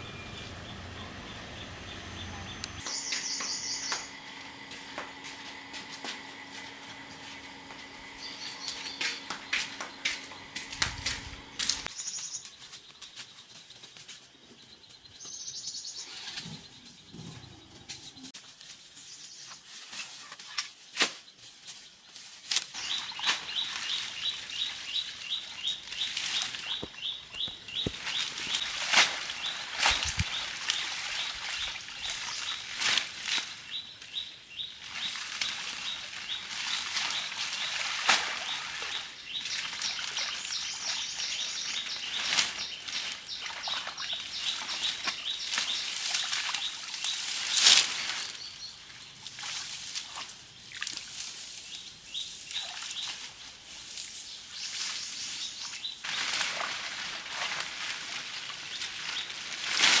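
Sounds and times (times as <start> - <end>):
birds chirping: 0.0 - 18.3, 22.8 - 49.2.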